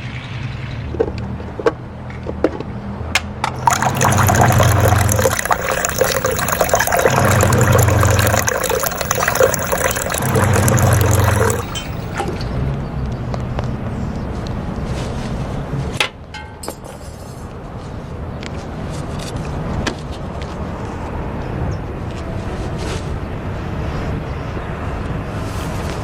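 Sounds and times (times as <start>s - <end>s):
liquid gushing and splashing: 3.6s - 12.5s.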